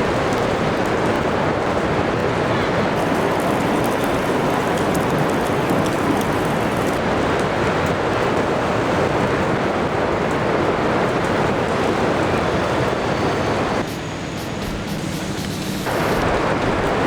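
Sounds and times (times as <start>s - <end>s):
steady rain pouring: 0.0s - 17.0s
ticks of raindrops: 2.9s - 7.8s.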